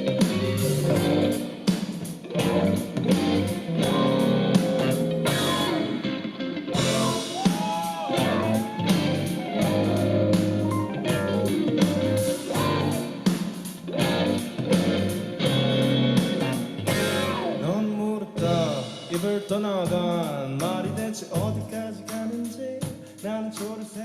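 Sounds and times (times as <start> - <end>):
live rock band playing: 0.0 - 22.4
electric guitar: 0.0 - 23.2
drum hits: 6.8 - 17.4.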